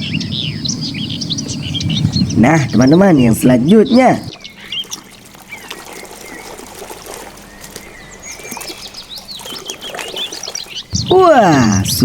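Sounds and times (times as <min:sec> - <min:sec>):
small birds chirping: 0:00.0 - 0:12.0
water splashing in a tub: 0:04.0 - 0:12.0.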